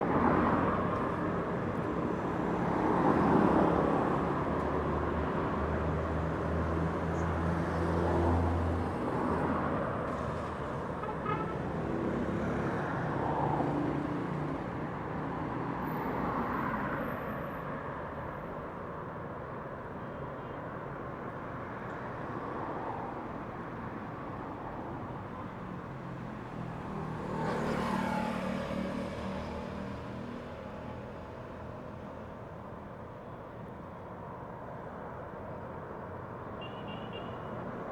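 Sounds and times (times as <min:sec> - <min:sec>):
cars passing: 0:21.5 - 0:33.8.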